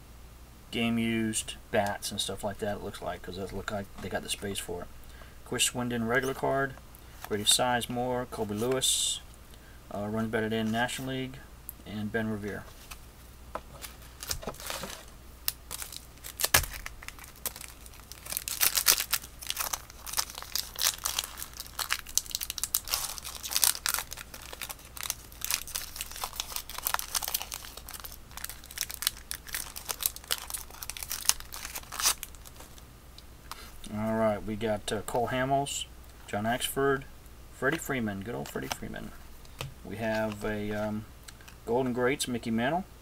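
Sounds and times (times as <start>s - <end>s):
foil wrapper crinkling and tearing: 13.8s - 32.8s.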